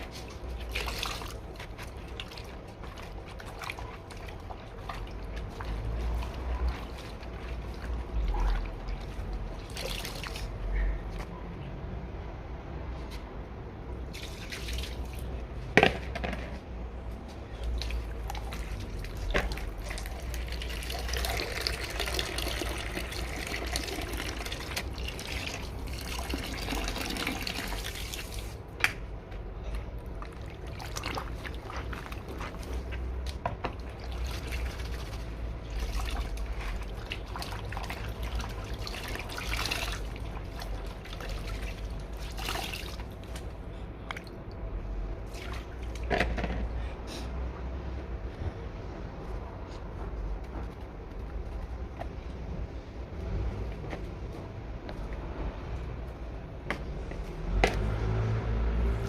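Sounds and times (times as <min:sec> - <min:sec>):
water trickling and splashing: 0:00.0 - 0:11.2, 0:14.0 - 0:15.6, 0:17.4 - 0:28.7, 0:29.5 - 0:46.2, 0:56.9 - 0:59.0.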